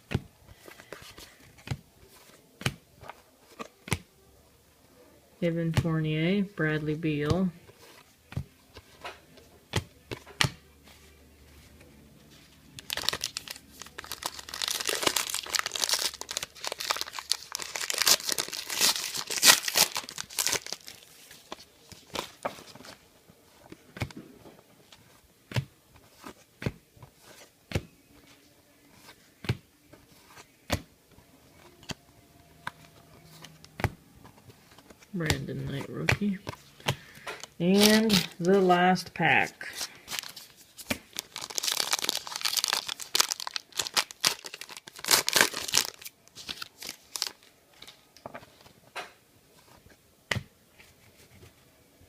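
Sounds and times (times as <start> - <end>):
cards clicking and tapping: 7.2 - 10.6
foil wrapper crinkling and tearing: 12.8 - 22.4, 37.6 - 38.5, 39.6 - 47.5.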